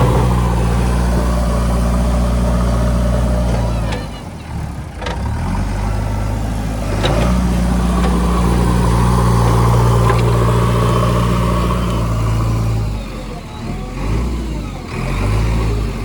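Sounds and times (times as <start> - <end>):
heavy diesel engine running: 0.0 - 16.0.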